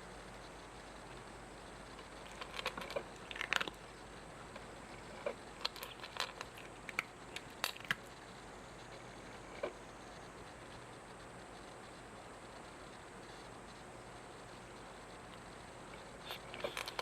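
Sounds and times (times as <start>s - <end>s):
cat crunching food: 2.0s - 8.2s, 15.3s - 17.0s.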